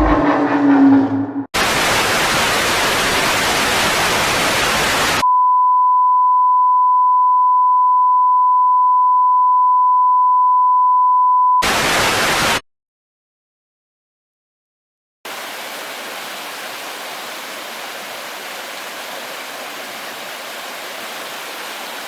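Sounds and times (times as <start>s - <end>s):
static hiss: 1.6s - 5.2s
steady pure beep: 5.2s - 11.6s.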